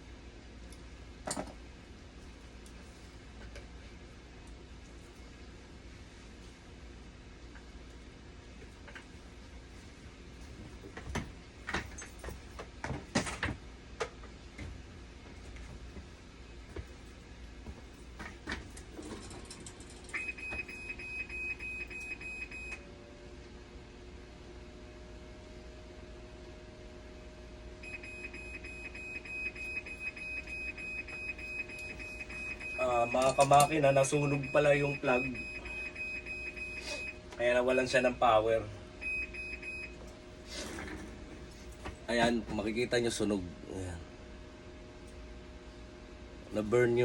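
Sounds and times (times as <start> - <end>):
low steady hum: 0.0 - 47.0
electronic alarm beeping: 20.1 - 22.8, 27.8 - 37.2, 39.0 - 40.0.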